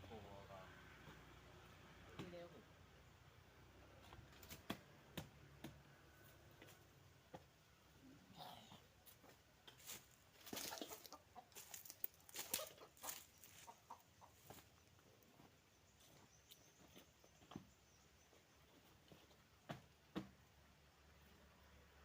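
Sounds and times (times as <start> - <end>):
faint chicken clucking: 6.2 - 19.8.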